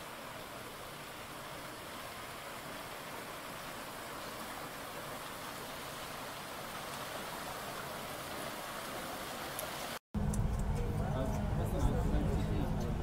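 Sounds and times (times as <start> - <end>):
running water: 0.0 - 10.0.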